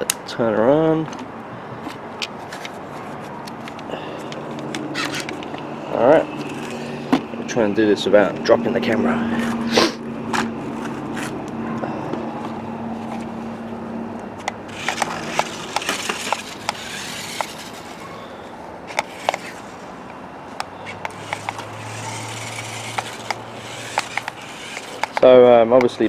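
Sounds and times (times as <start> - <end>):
electric motors humming: 3.0 - 26.0
tyres rolling over ground: 14.4 - 20.1.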